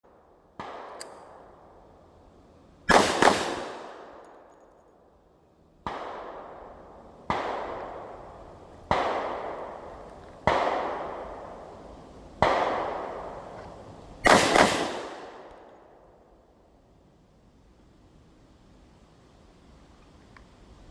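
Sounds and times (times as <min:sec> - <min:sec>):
light click: 0:00.9 - 0:01.3
echoing handgun shots: 0:02.9 - 0:04.4, 0:14.2 - 0:15.9.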